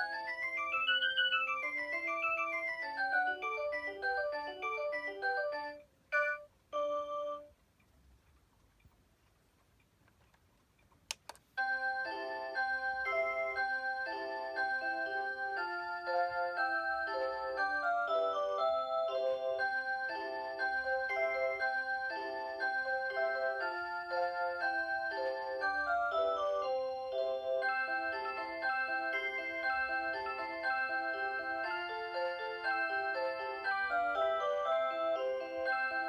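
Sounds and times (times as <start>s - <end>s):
alarm clock chime melody: 0.0s - 7.6s, 11.6s - 36.0s
sharp click: 10.1s - 11.5s.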